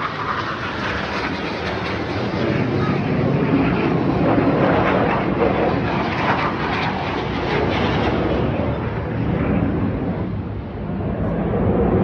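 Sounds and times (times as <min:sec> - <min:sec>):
jet aircraft flying past: 0:00.0 - 0:12.0.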